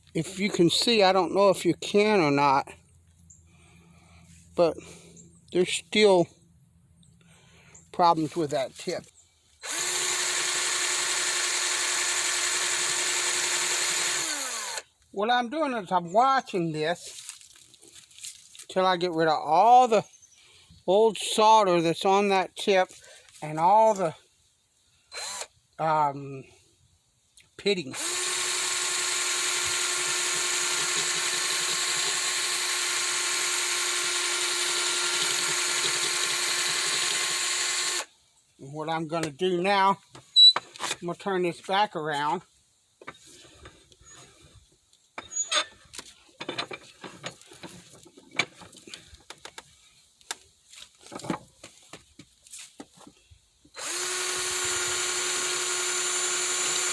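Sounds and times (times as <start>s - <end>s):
small electric power tool running: 9.6s - 14.9s, 25.2s - 25.5s, 27.9s - 38.1s, 53.8s - 56.9s.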